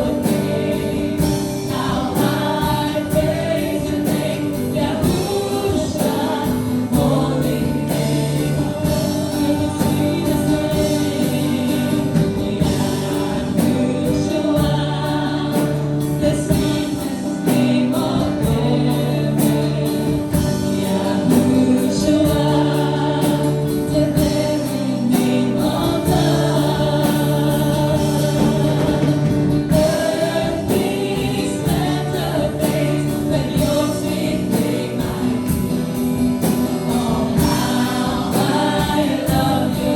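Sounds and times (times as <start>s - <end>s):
group singing gospel song: 0.0s - 39.9s.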